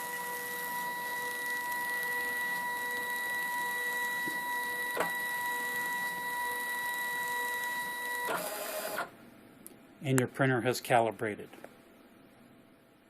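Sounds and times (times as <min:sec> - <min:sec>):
label printer feed motor whine: 0:00.0 - 0:09.1
printer click: 0:04.2 - 0:06.2.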